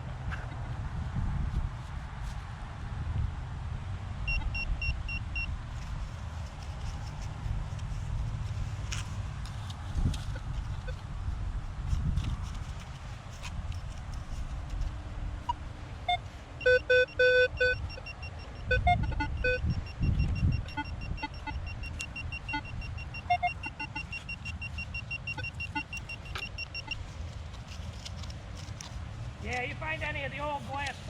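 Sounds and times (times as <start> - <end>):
metal detector beeps: 4.3 - 5.5, 15.4 - 27.0.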